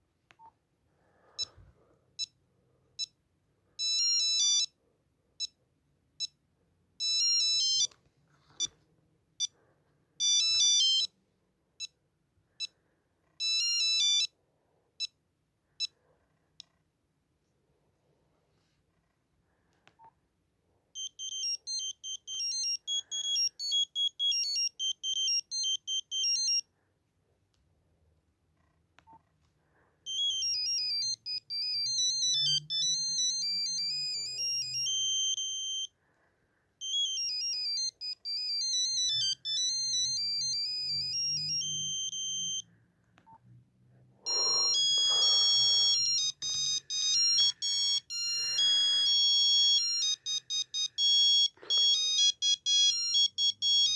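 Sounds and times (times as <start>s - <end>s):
mobile phone ringtones: 3.8s - 4.8s, 7.0s - 8.0s, 10.2s - 11.2s, 13.4s - 14.3s, 21.0s - 26.7s, 30.1s - 35.9s, 36.8s - 42.7s, 44.3s - 53.9s.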